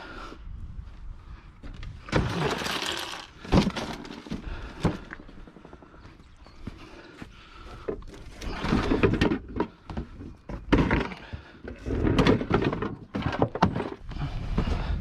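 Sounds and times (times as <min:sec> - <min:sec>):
scrap parts thudding and clattering: 0:02.1 - 0:05.2, 0:07.9 - 0:14.1.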